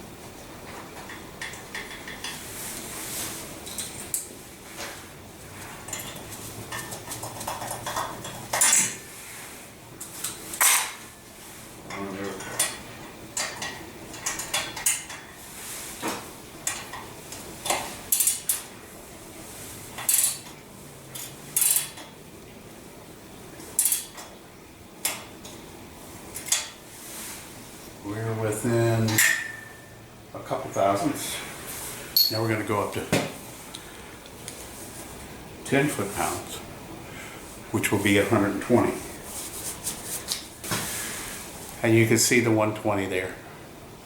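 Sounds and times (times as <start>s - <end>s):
metal tools clinking: 32.2s - 32.5s.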